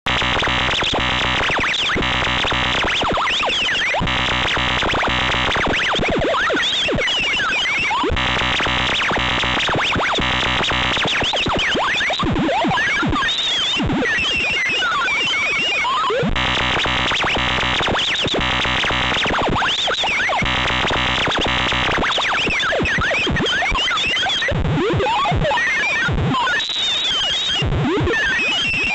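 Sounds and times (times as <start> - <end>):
harsh buzzing alarm tone: 0.1 - 13.4, 16.1 - 24.0.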